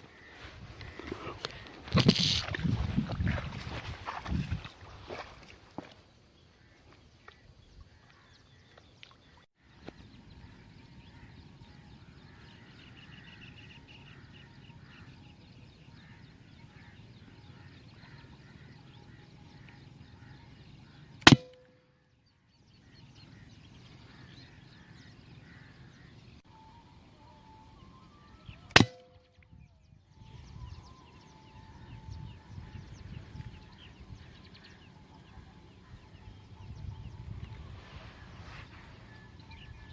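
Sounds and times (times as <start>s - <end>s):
outdoor background noise: 0.0s - 39.9s
air rifle shot: 21.2s - 21.7s, 28.7s - 29.1s.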